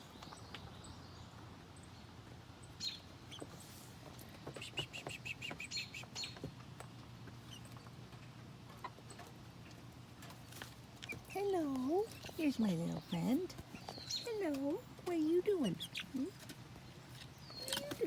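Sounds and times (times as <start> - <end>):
low steady hum: 0.0 - 18.0
chicks peeping: 4.5 - 6.6, 10.3 - 18.0.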